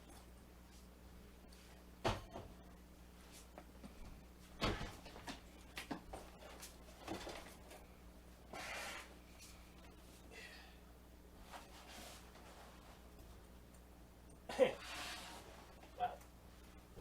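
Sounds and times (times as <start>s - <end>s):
scraping rustle: 14.8s - 15.8s.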